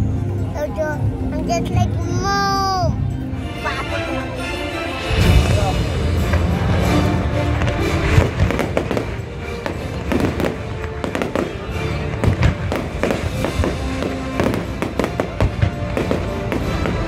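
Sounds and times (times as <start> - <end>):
music playing: 0.0 - 17.0
fireworks banging: 5.1 - 17.0.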